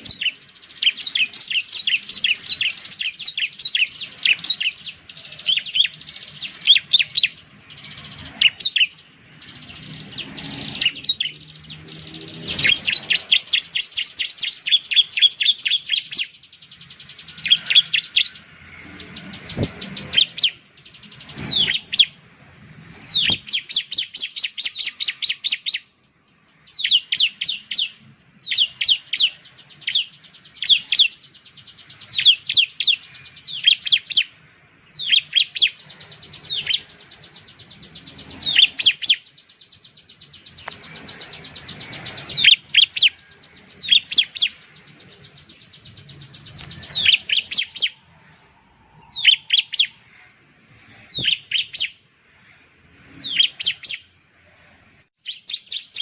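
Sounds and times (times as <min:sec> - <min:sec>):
bird singing high notes: 0:26.6 - 0:52.1.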